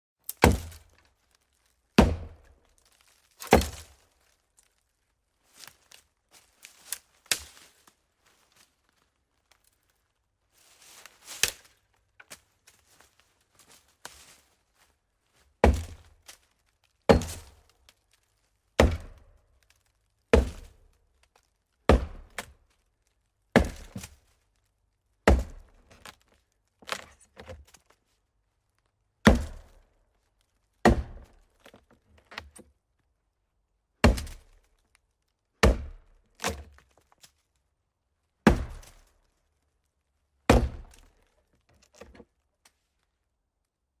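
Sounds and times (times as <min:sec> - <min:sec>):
axe chopping wood: 0:00.3 - 0:00.9, 0:02.0 - 0:02.5, 0:03.4 - 0:04.0, 0:07.3 - 0:07.7, 0:15.6 - 0:16.2, 0:17.1 - 0:17.6, 0:18.8 - 0:19.3, 0:20.3 - 0:20.8, 0:21.9 - 0:22.5, 0:23.5 - 0:24.2, 0:25.2 - 0:26.2, 0:29.2 - 0:29.8, 0:30.8 - 0:32.6, 0:34.0 - 0:34.6, 0:35.6 - 0:36.8, 0:38.4 - 0:39.1, 0:40.5 - 0:41.1.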